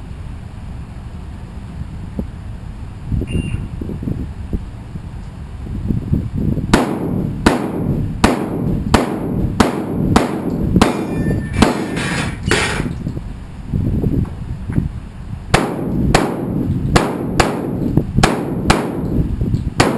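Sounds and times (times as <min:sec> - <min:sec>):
shotgun shots: 0:06.7 - 0:12.8, 0:15.5 - 0:19.1.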